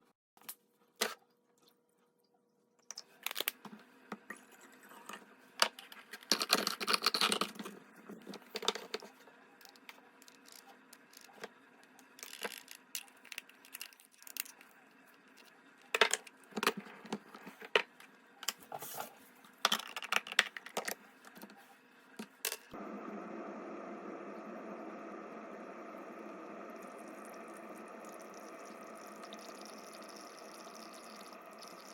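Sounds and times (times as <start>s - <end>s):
coffee machine running: 22.7s - 31.9s.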